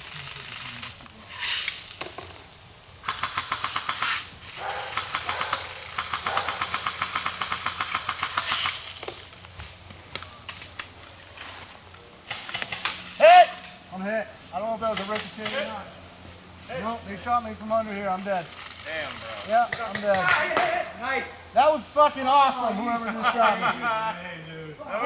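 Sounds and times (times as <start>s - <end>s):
airsoft guns firing bursts: 0.0s - 1.0s, 3.0s - 9.3s, 12.2s - 13.8s, 14.6s - 16.0s, 16.8s - 21.2s.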